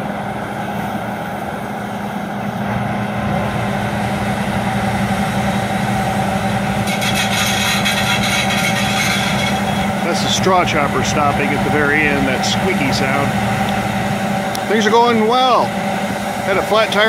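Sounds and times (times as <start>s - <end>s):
combine harvester running: 0.0s - 17.0s
high-pitched squeaking: 6.8s - 10.1s.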